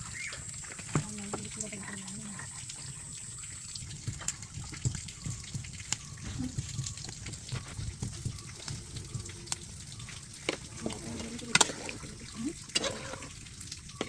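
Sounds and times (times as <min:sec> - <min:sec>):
tap water splashing into sink: 0:00.1 - 0:03.0.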